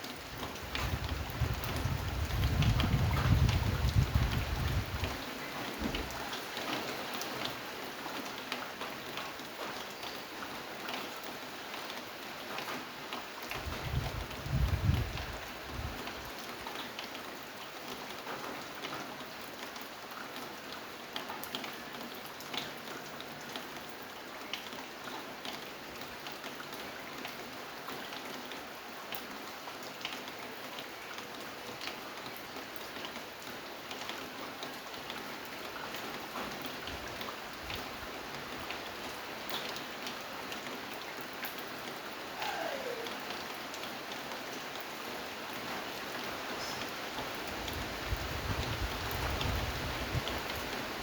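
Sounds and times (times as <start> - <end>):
steady rain falling: 0.0 - 51.0.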